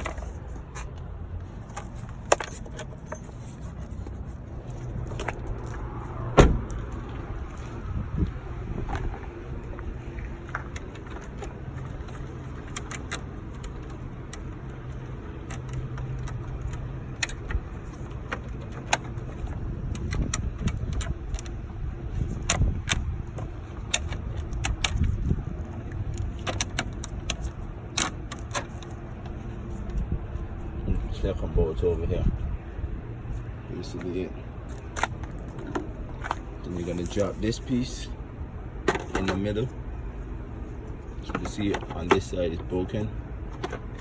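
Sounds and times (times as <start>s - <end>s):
low rumble: 0.0s - 11.9s
wrench clinking against a bolt: 1.7s - 4.0s.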